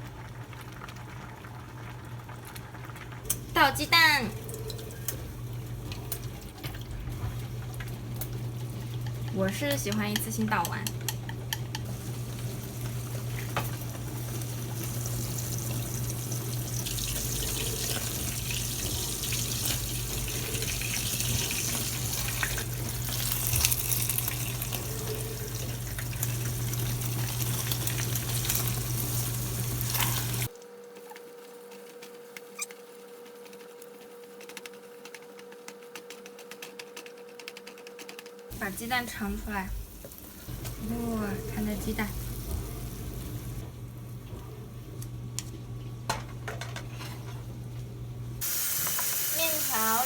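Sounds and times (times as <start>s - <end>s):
eggs sizzling in hot oil: 0.0s - 30.5s, 38.5s - 43.6s, 48.4s - 50.0s.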